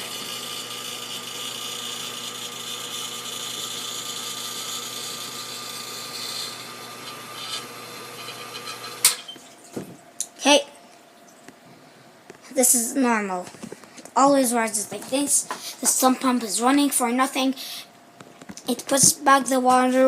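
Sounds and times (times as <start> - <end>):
pump motor humming: 0.0 - 9.9.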